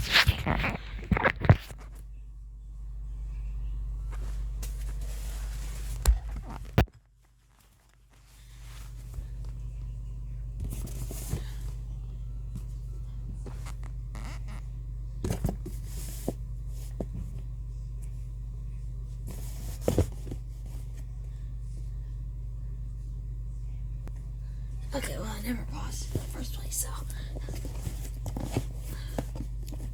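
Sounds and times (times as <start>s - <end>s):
scrapes and rustles: 0.0s - 2.0s, 4.0s - 9.7s, 10.6s - 11.8s, 19.2s - 21.2s, 27.3s - 29.9s
steady low hum: 0.0s - 29.9s.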